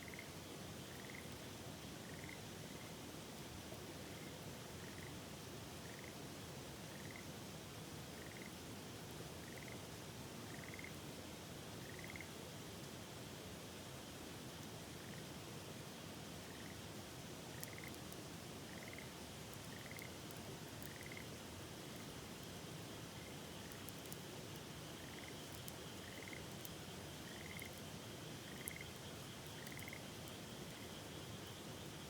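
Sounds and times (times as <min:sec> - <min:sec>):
campfire crackling: 0:19.2 - 0:31.3
frog calling: 0:20.9 - 0:21.2, 0:29.6 - 0:30.0.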